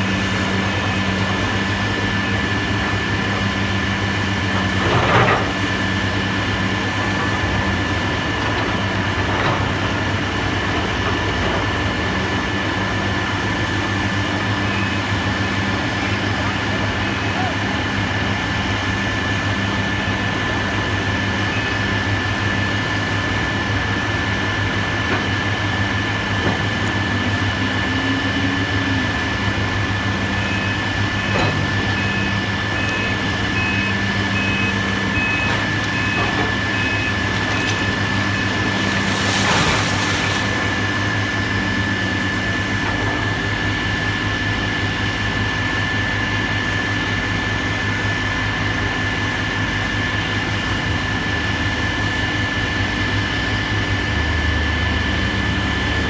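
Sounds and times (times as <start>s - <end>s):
diesel engine running: 0.0s - 56.0s
backup alarm beeping: 30.4s - 38.6s.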